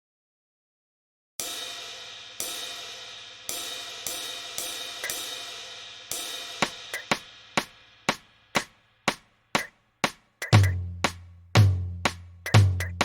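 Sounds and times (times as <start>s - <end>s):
crash cymbals ringing: 1.4s - 8.6s.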